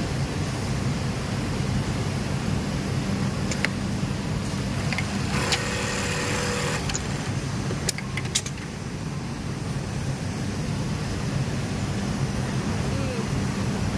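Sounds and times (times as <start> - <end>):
low hum of sewing machines: 0.0 - 13.9
sewing machine stitching burst: 4.5 - 8.6
sharp clicks: 4.8 - 8.7.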